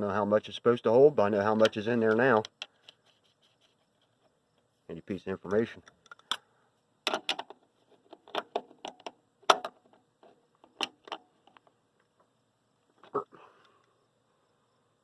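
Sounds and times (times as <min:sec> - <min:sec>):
sharp clicks and knocks: 0:07.0 - 0:12.3.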